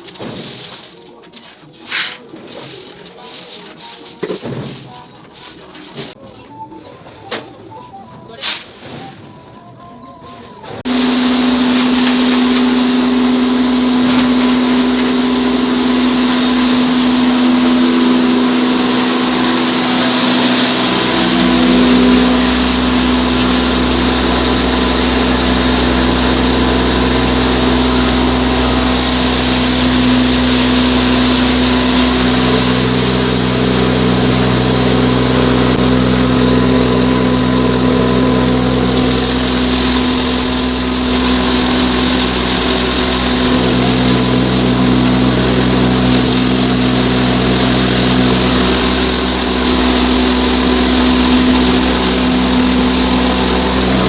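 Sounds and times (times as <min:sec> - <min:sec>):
grain mill humming: 0:00.0 - 0:06.2, 0:10.8 - 0:54.0.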